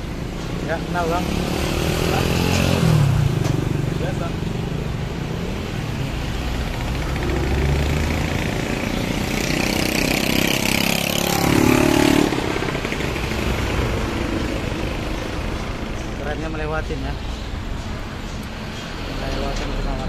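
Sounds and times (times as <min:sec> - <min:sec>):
vehicle engine passing by: 0:00.7 - 0:04.4, 0:05.4 - 0:16.6.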